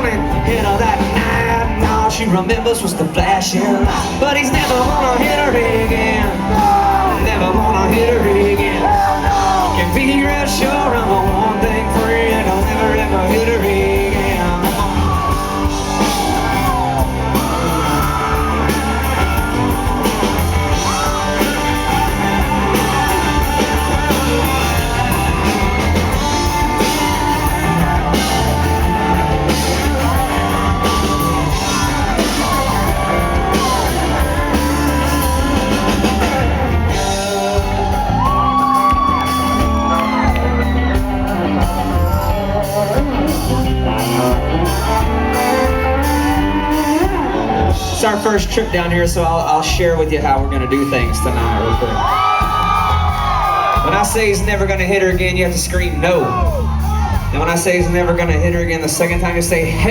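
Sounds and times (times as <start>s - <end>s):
bending lead guitar line: 0.0s - 59.9s
country-rock band playing: 0.0s - 59.9s
drums: 0.0s - 59.9s.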